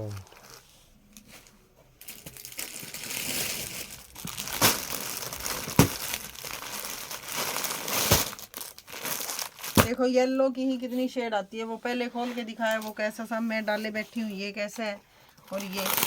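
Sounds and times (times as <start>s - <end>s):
plastic packaging crinkling: 0.0s - 0.6s, 1.2s - 10.0s, 15.3s - 16.0s.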